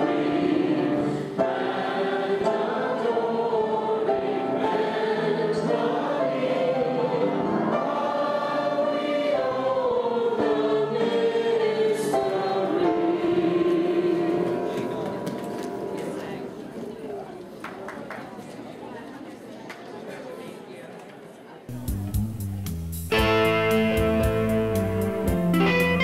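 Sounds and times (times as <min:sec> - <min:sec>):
choir singing: 0:00.0 - 0:15.9.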